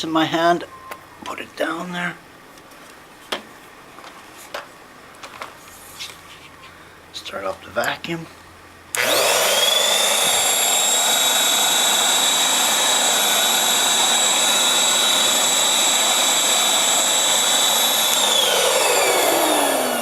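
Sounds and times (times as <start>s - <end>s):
vacuum motor whine: 8.9s - 20.0s.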